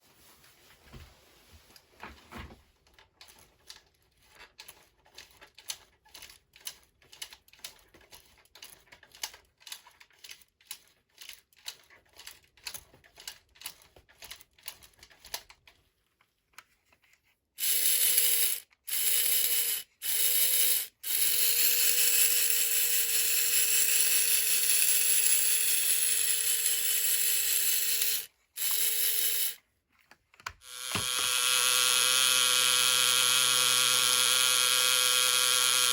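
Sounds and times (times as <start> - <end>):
ratchet-like clicking: 17.6 - 29.6, 30.6 - 35.9
toy mechanism whirring: 17.6 - 29.7, 30.5 - 35.9.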